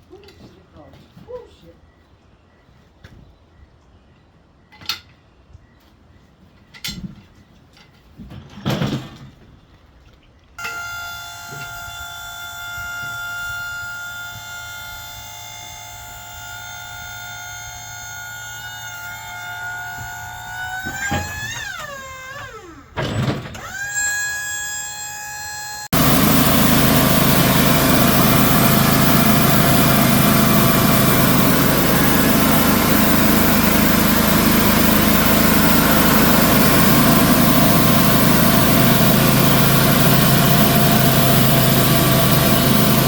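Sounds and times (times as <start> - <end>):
engine running: 23.6 - 43.0.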